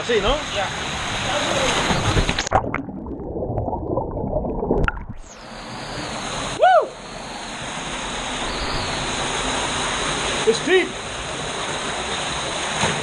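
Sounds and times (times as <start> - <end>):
waterfall rushing: 5.4 - 12.7
person shouting woo: 6.6 - 7.0.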